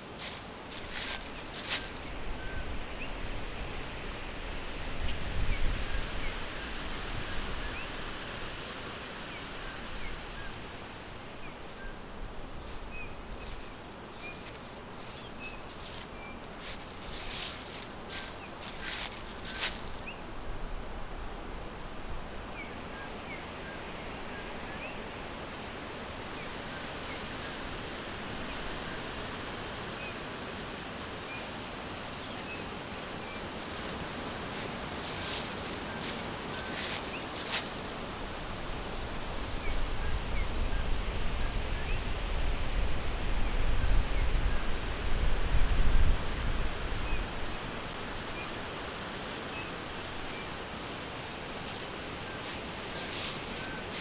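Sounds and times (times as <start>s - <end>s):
rustling: 0.0s - 2.4s, 10.6s - 20.4s, 29.4s - 38.1s, 47.4s - 54.0s
steady forest hiss: 0.0s - 54.0s.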